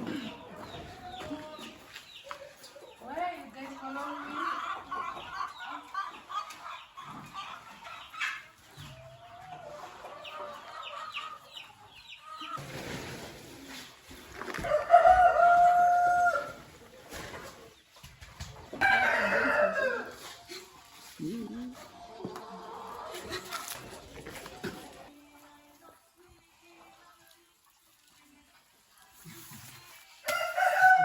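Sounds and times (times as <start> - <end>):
chickens clucking: 0.0 - 25.1
rooster crowing: 14.7 - 16.6, 18.8 - 20.2, 30.3 - 31.0.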